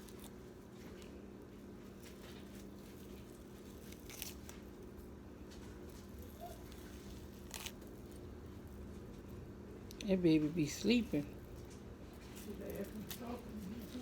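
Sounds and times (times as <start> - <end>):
hands peeling sausage skin: 0.0 - 10.1
steady low hum: 0.0 - 14.0.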